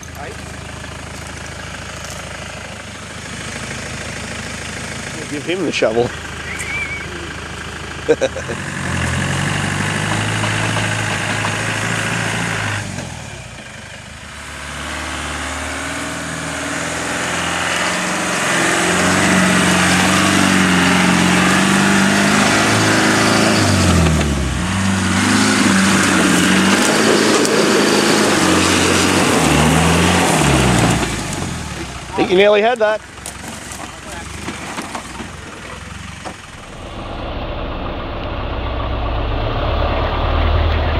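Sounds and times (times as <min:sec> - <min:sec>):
vehicle engine revving hard: 0:05.2 - 0:13.4, 0:14.3 - 0:32.1, 0:36.0 - 0:40.9.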